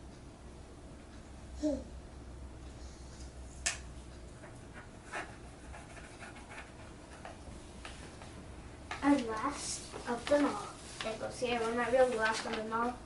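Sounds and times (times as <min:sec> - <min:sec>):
soft taps and rustles: 0:03.7 - 0:13.0.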